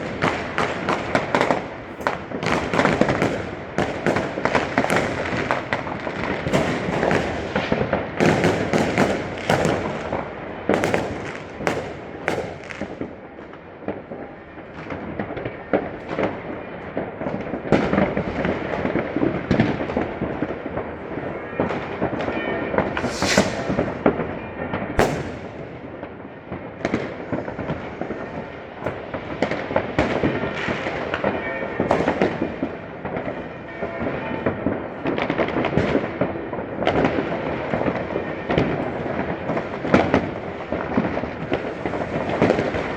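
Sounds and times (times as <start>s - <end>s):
firecrackers crackling: 0.0s - 42.9s
fireworks bangs: 0.0s - 42.9s
sharp loud cracks: 23.0s - 24.1s.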